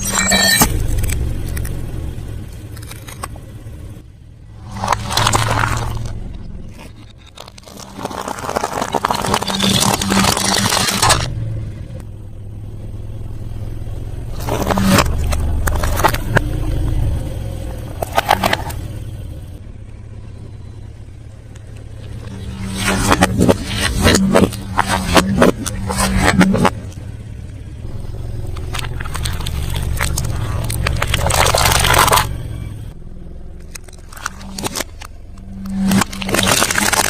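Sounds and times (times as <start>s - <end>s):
chewing and crunching fried food: 4.6s - 11.3s, 28.6s - 32.4s, 33.7s - 35.1s, 35.7s - 37.0s.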